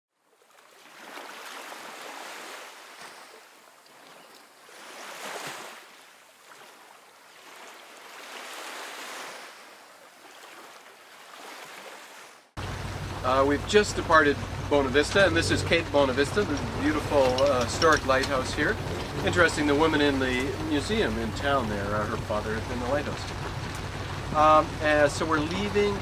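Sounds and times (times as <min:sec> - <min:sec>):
ocean waves surging: 0:11.4 - 0:26.0.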